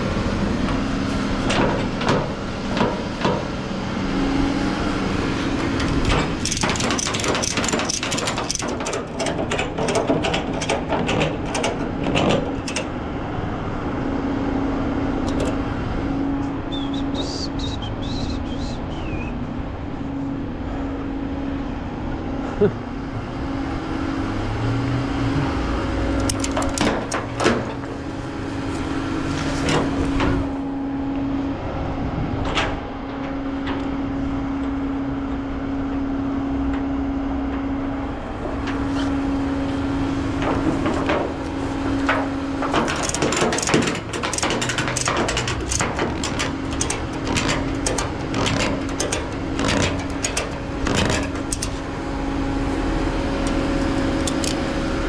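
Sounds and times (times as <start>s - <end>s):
metallic clicks and clanks: 1.4s - 3.6s, 5.6s - 13.2s, 15.2s - 15.7s, 26.1s - 30.6s, 40.4s - 52.4s, 53.3s - 54.8s.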